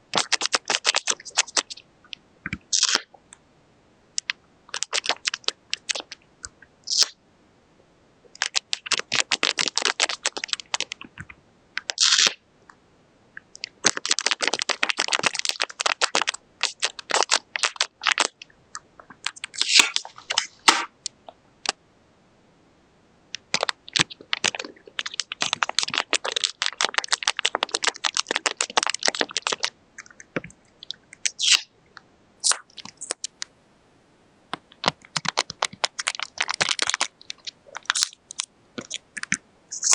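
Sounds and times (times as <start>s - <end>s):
paper and tape crinkling: 0.1s - 1.8s, 4.2s - 6.2s, 8.4s - 11.1s, 13.6s - 18.4s, 23.4s - 29.7s, 34.8s - 39.9s.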